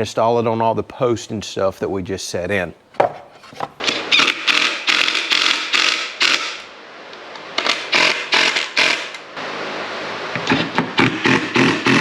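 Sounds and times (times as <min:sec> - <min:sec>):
wooden parts and tools scraping: 0:02.8 - 0:03.9.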